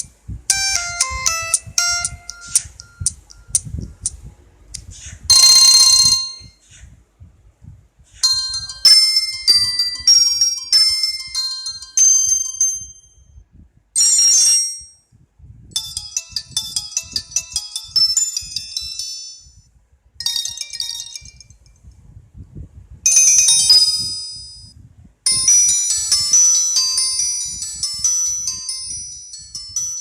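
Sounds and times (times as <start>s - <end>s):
mobile phone ringtone melodies: 0.5s - 3.6s, 5.3s - 6.6s, 8.2s - 13.2s, 15.8s - 19.6s, 20.2s - 21.8s, 23.1s - 24.7s, 25.3s - 30.0s.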